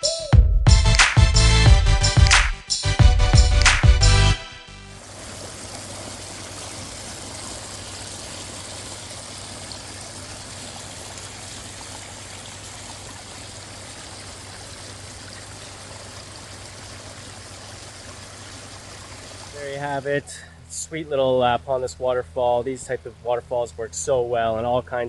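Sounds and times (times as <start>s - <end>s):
waterfall splashing and trickling: 4.9s - 20.3s.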